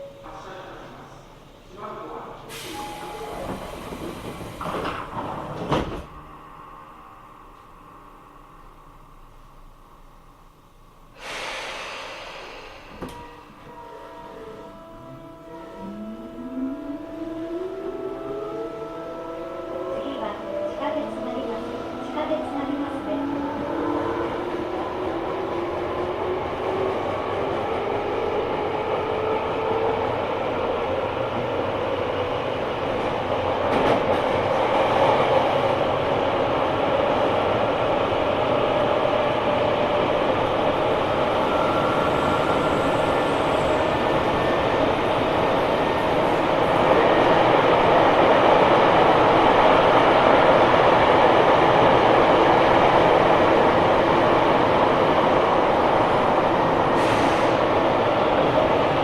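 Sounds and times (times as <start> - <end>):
train running noise: 10.3 - 25.0, 32.8 - 59.0.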